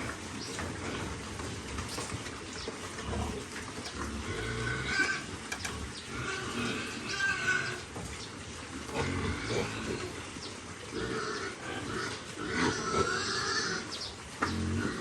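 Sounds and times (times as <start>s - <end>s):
piglets grunting: 2.8s - 8.0s, 8.8s - 15.0s.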